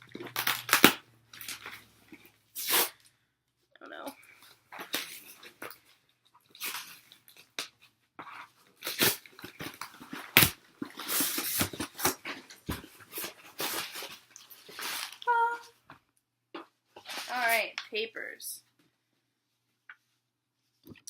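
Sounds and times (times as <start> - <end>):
cardboard and paper rustling: 8.3 - 15.6, 17.0 - 17.6.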